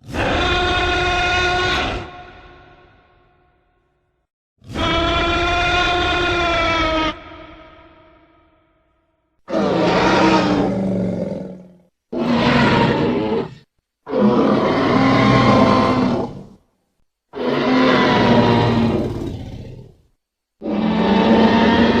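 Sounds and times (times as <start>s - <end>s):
creature roaring: 0.0s - 2.8s, 4.6s - 8.0s, 9.5s - 16.6s, 17.3s - 20.0s, 20.6s - 22.0s.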